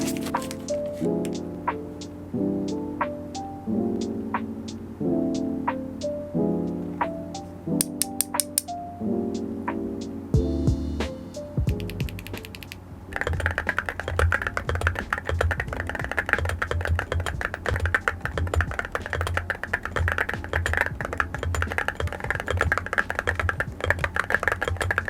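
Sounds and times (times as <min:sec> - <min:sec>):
fast mechanical keyboard typing: 0:11.7 - 0:25.0.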